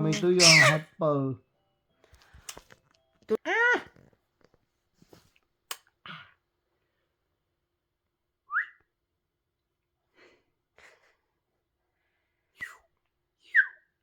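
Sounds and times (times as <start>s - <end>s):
baby squealing: 0.0s - 0.9s.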